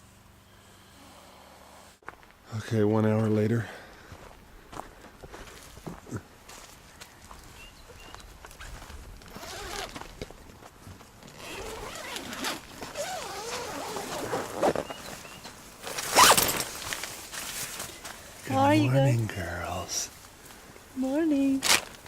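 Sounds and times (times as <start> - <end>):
tent zipper rasping open: 9.3 - 10.0, 11.3 - 15.1, 15.8 - 17.0.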